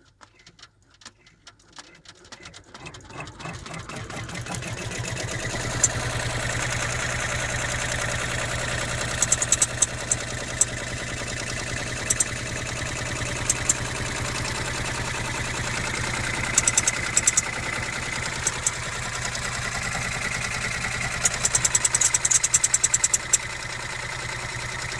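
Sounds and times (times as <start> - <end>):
embroidery machine humming: 4.2 - 24.9
high-pitched squeaks: 4.8 - 23.5.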